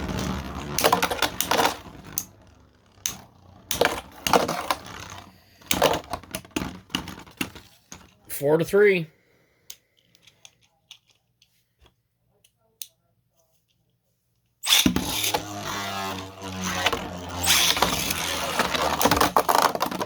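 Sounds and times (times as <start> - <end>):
spinning tops whirring and rattling: 0.0 - 7.1, 14.6 - 20.0.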